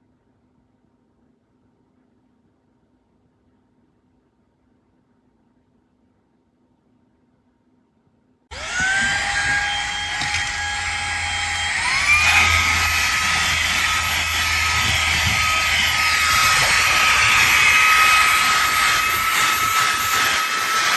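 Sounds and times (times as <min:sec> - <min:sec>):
handheld vacuum motor whining: 0:08.5 - 0:20.9.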